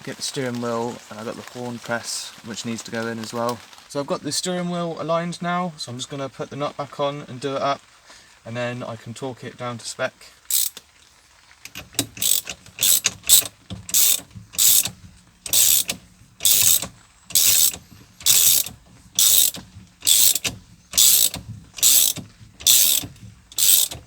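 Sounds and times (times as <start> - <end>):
socket ratchet clicking: 10.5 - 10.8, 11.7 - 24.0.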